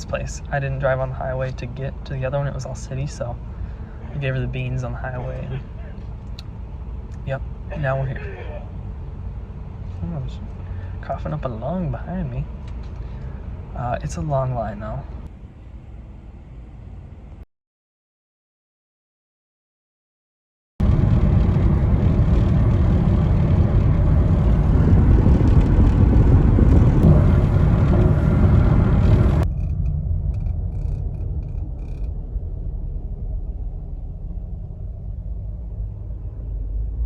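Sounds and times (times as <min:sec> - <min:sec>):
quiet low rumble: 0:00.0 - 0:17.4, 0:20.8 - 0:37.0
loud rushing car rumble: 0:20.8 - 0:37.0.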